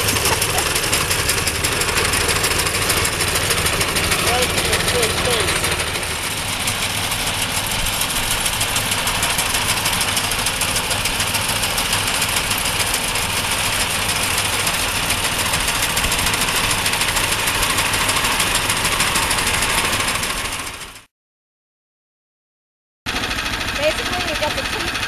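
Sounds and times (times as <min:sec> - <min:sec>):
small engine running: 0:00.0 - 0:21.1, 0:23.1 - 0:25.0.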